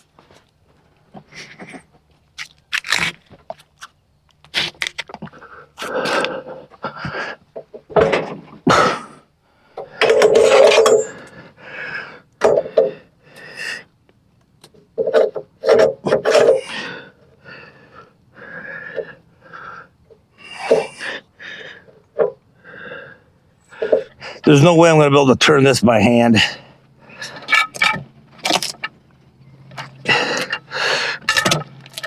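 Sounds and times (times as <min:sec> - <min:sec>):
log scraping and bumping: 0:27.2 - 0:29.0, 0:29.7 - 0:32.0.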